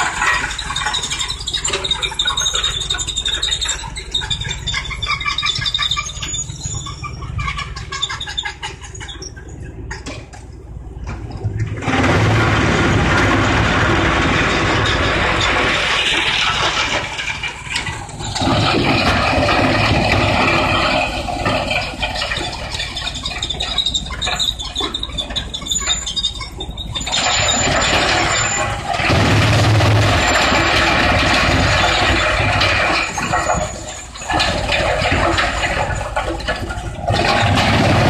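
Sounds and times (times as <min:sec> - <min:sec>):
wood chipper chipping wood: 0:11.7 - 0:17.2, 0:27.2 - 0:36.3, 0:37.0 - 0:38.0.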